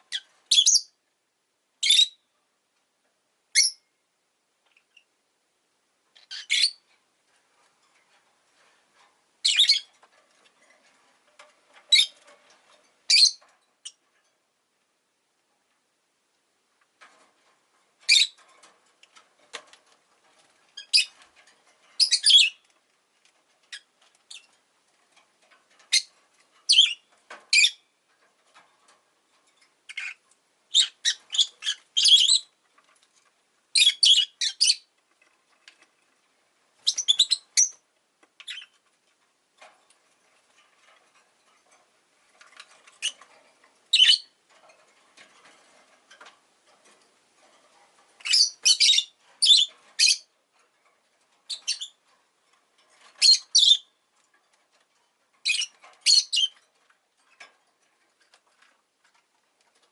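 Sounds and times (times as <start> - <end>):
lovebird chirping: 0.1 - 1.0, 1.8 - 2.2, 3.5 - 3.8, 6.2 - 6.8, 9.4 - 9.9, 11.9 - 12.2, 13.1 - 14.0, 18.1 - 18.4, 20.8 - 21.2, 22.0 - 22.6, 26.7 - 27.8, 29.9 - 32.5, 33.7 - 34.9, 36.8 - 37.8, 38.4 - 38.7, 43.9 - 44.3, 48.2 - 50.3, 51.5 - 52.0, 53.2 - 53.9, 55.4 - 56.6.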